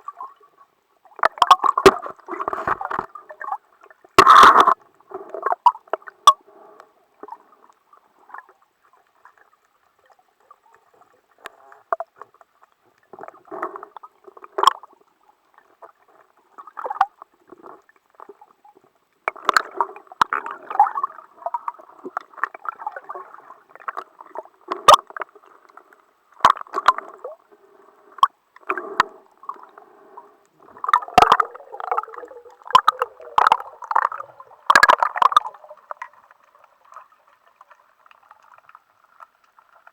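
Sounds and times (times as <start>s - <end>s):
underwater gurgling and sloshing: 0.0s - 39.9s.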